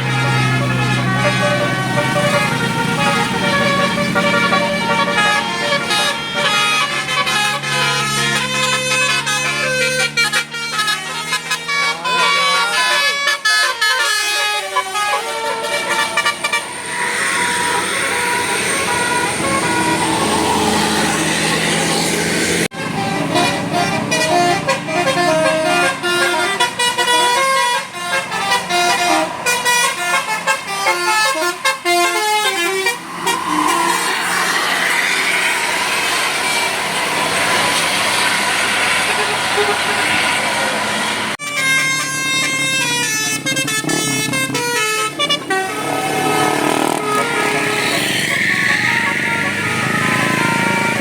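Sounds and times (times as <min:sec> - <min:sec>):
musical bus horn melody: 0:00.0 - 0:51.0
rushing noise: 0:16.0 - 0:22.7, 0:31.8 - 0:41.4, 0:45.6 - 0:51.0.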